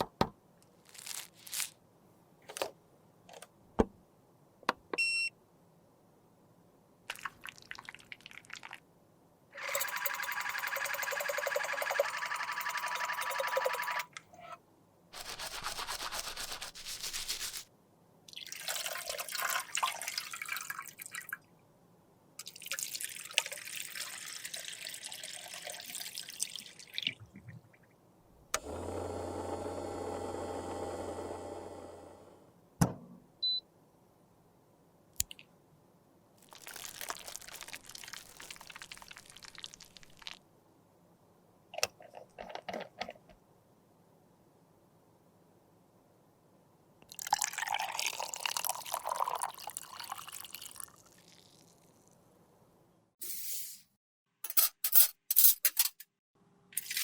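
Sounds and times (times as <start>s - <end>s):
liquid pouring and stirring: 15.2s - 17.6s, 18.3s - 21.4s, 22.4s - 27.5s, 36.4s - 40.4s, 47.1s - 52.1s.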